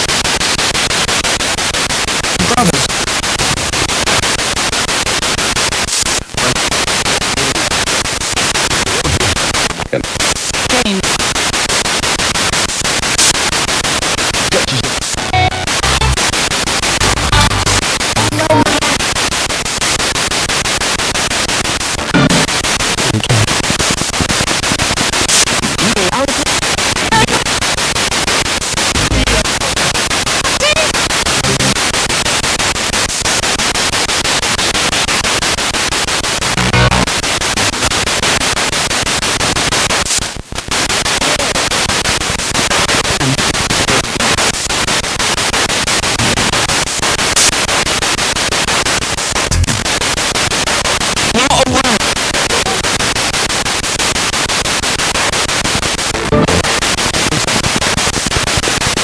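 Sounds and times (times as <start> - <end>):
radio static sweeping: 0.0 - 59.0
radio tones: 2.2 - 4.0, 5.6 - 19.3, 21.5 - 32.2, 36.2 - 38.6, 39.6 - 44.9, 46.0 - 48.6, 49.2 - 53.5, 55.2 - 59.0
voice fragments: 2.4 - 3.0, 5.8 - 7.8, 8.7 - 11.2, 13.0 - 13.6, 14.4 - 19.1, 22.2 - 24.4, 25.3 - 27.6, 28.8 - 31.9, 36.5 - 37.8, 41.1 - 41.8, 42.7 - 44.6, 46.2 - 46.8, 49.4 - 50.0, 51.2 - 53.0, 56.2 - 58.0.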